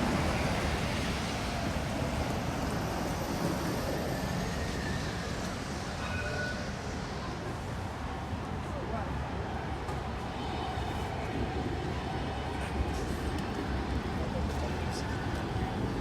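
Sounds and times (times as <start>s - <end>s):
faint high squeals: 3.9s - 7.3s.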